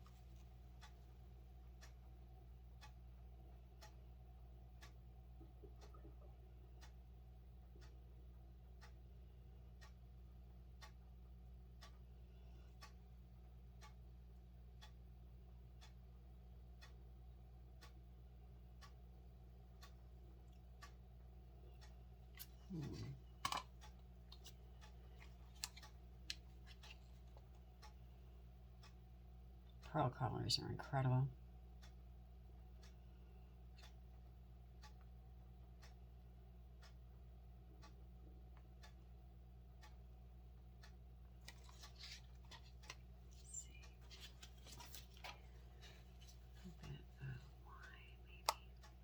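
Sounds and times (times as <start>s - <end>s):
low room hum: 0.0s - 49.0s
faint sharp clicks and taps: 21.7s - 28.0s, 40.8s - 49.0s
light clicks and scrapes: 41.4s - 48.6s.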